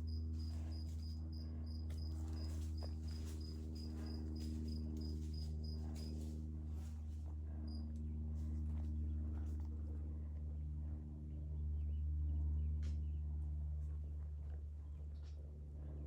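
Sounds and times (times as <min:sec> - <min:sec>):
insect chirping: 0:00.0 - 0:06.1
steady low hum: 0:00.0 - 0:16.0.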